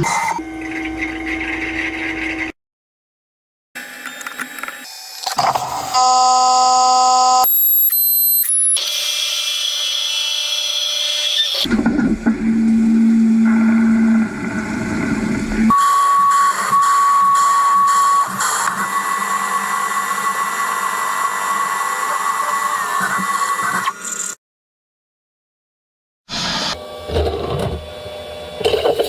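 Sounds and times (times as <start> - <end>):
lathe cutting and whining: 8.8 - 24.0.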